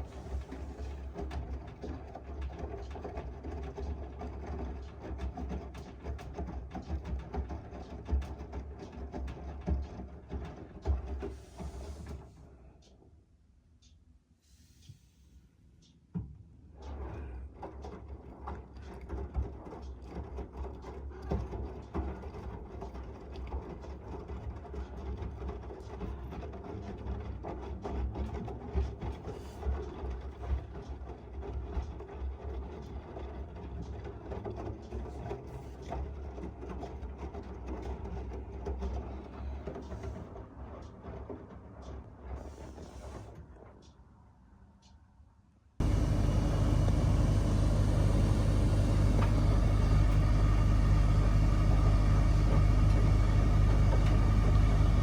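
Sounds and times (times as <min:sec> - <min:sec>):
washing machine running: 0:45.8 - 0:55.0.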